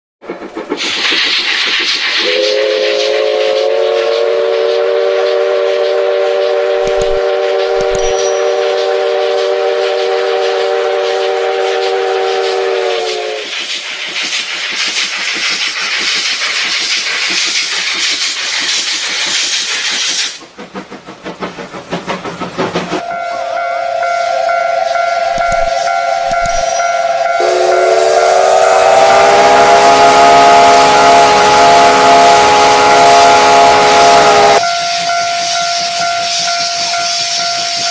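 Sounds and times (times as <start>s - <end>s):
rush of steam and train noise: 0.2s - 37.9s
steam locomotive chime whistle: 2.2s - 13.5s, 23.0s - 37.9s.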